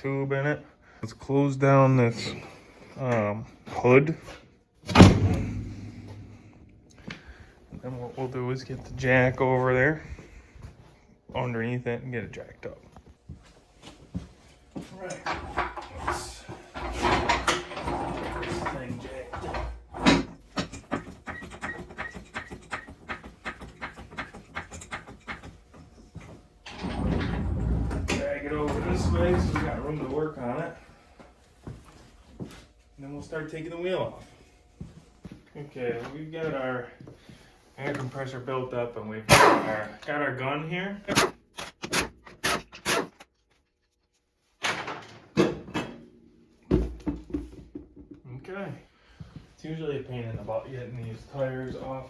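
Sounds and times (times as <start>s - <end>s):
jack knock: 4.9s - 7.0s.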